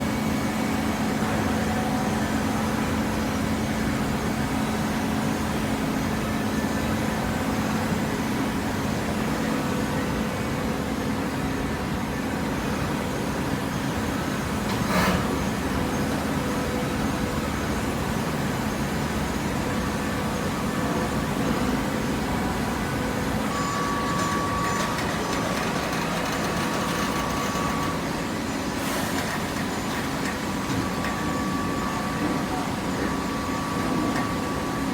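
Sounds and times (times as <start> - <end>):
thin machine whine: 0.0 - 34.9
baler machine hum: 13.9 - 34.9.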